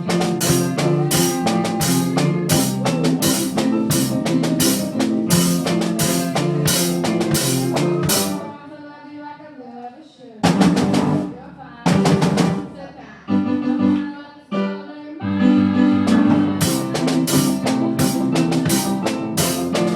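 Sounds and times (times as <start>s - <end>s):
bass line: 0.0s - 8.5s, 15.4s - 19.9s
drum beat: 0.0s - 8.5s, 10.4s - 11.3s, 11.9s - 12.7s, 16.4s - 19.9s
guitar: 0.0s - 8.7s, 15.2s - 19.9s.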